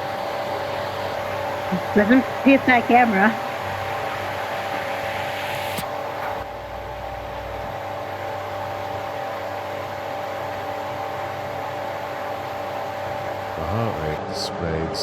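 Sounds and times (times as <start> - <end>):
machine hum with held tones: 0.0 - 14.6
water sprays hissing: 1.1 - 5.8.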